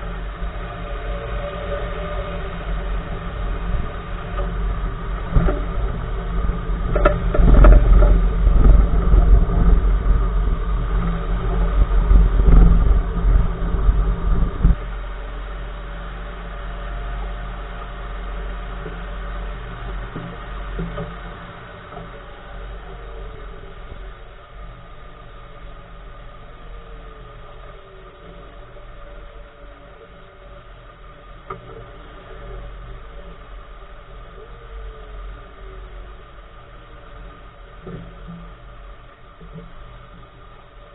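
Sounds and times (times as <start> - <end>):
suspension clunks: 0.0 - 14.8
road and tyre rumble: 0.0 - 40.9
steady hum: 0.0 - 40.9.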